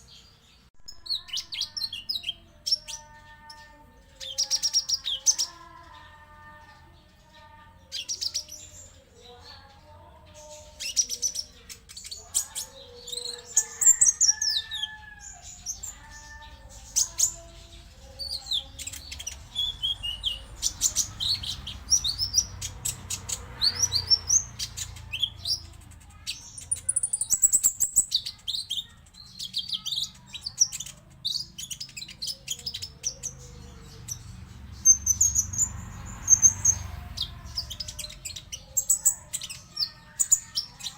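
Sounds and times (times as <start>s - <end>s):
high-pitched bird twittering: 10.4s - 33.4s.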